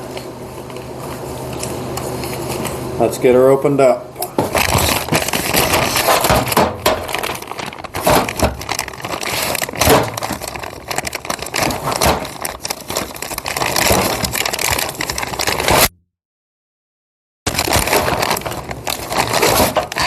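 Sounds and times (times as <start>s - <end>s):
plastic packaging crinkling: 4.3s - 15.9s, 17.5s - 20.0s.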